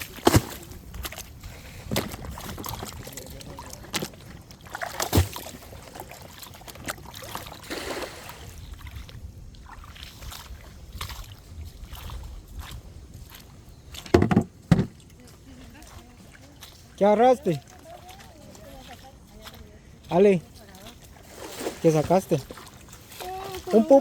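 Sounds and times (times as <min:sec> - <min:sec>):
water sloshing around boat: 0:00.0 - 0:24.0
knocks: 0:14.1 - 0:14.9.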